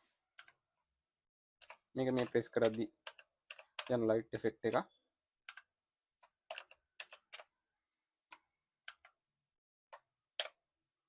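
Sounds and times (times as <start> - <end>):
mechanical keyboard keys clicking: 1.6 - 4.0.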